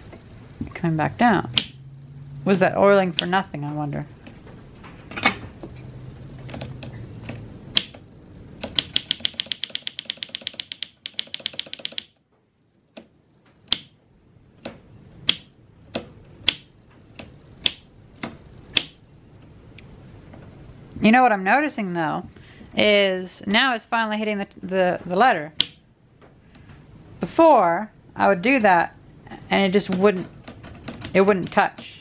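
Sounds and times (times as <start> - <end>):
manual typewriter keystrokes: 6.4 - 12.2, 14.6 - 19.0, 29.9 - 31.9.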